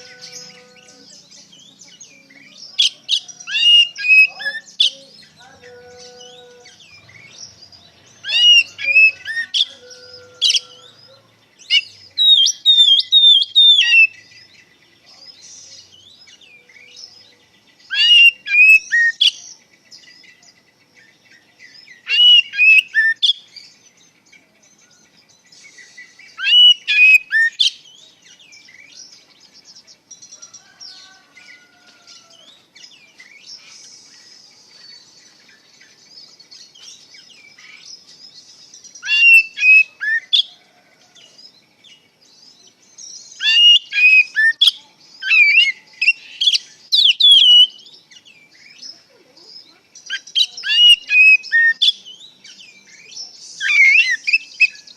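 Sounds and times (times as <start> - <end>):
bird whistling song phrases: 0.0 - 5.4, 8.2 - 10.9, 11.7 - 14.2, 17.9 - 19.4, 21.9 - 23.4, 25.6 - 27.8, 39.0 - 40.5, 43.2 - 47.9, 49.6 - 54.9.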